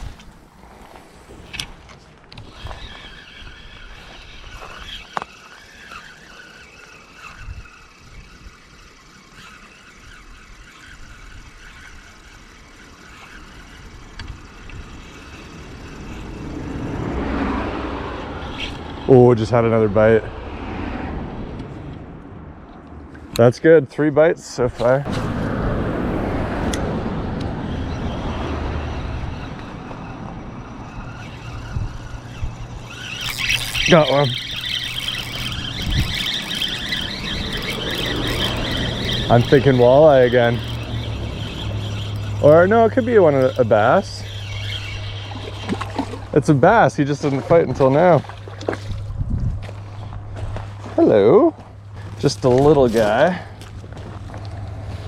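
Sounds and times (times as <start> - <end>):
gusty wind rumbling on microphone: 0.0 - 5.2, 7.2 - 8.8, 24.7 - 50.9
road vehicle passing: 0.0 - 23.8, 24.8 - 55.0.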